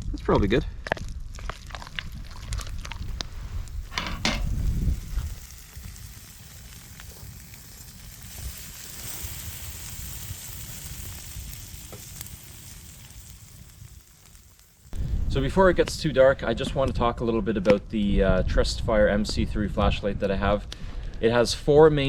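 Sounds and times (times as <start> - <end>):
campfire crackling and hissing: 0.9 - 22.0
handling clicks and knocks: 3.9 - 4.6.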